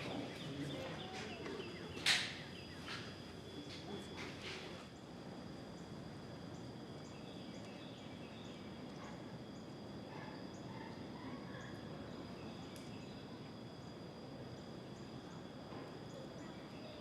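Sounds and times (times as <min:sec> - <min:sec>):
insects singing: 0:00.0 - 0:17.0.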